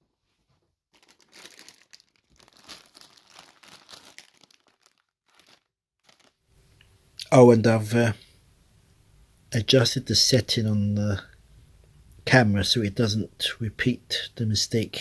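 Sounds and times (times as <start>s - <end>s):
crisp packet crinkling: 0.9s - 6.6s.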